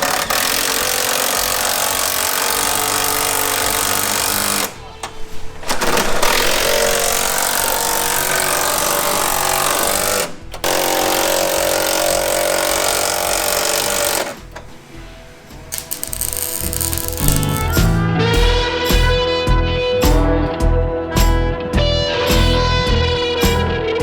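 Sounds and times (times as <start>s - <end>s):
handheld power tool running: 0.0s - 4.8s, 5.7s - 14.6s, 15.8s - 17.8s.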